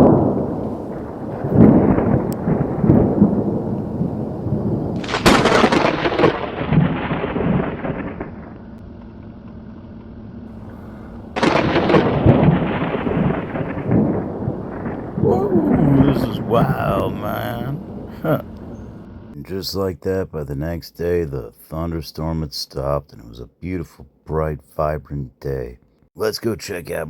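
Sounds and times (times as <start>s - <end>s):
thunder cracks and rumbles: 0.0s - 8.8s, 10.6s - 19.4s.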